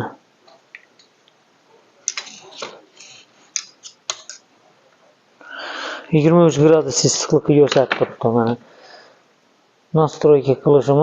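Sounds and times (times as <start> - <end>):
small parts scraping rustles: 2.1 - 4.4.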